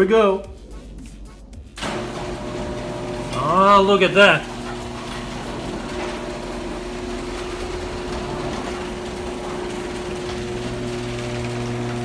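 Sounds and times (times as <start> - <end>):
garage door opener motor humming: 1.8 - 12.0.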